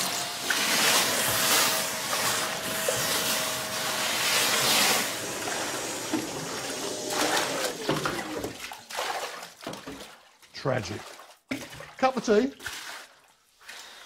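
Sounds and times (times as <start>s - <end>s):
vacuum motor whine: 0.0s - 8.5s
vacuum slurping water: 0.0s - 9.7s.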